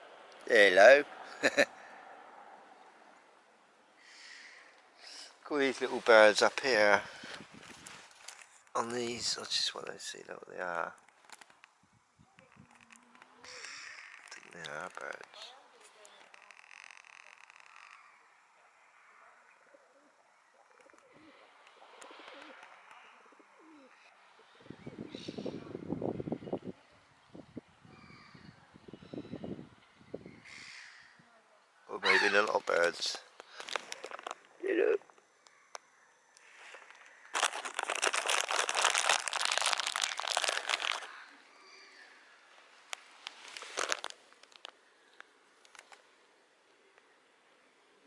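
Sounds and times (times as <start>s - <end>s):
plastic crinkling rustle: 5.7s - 9.4s, 12.5s - 18.0s, 32.7s - 34.5s, 36.5s - 41.3s, 42.7s - 44.8s
pigeons cooing faintly: 12.4s - 16.4s, 17.4s - 37.4s, 41.0s - 42.9s.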